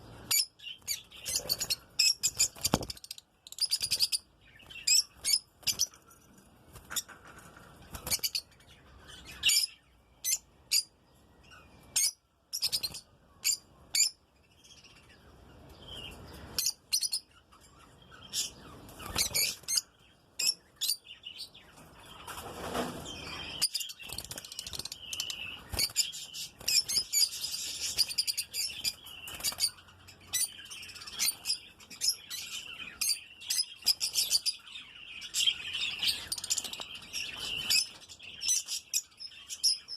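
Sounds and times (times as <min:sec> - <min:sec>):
birds chirping: 0:00.0 - 0:39.9.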